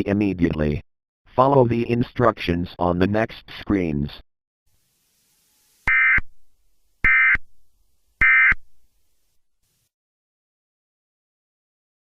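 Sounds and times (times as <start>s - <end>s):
electronic data bursts: 5.2s - 6.3s, 7.0s - 7.4s, 8.2s - 8.6s.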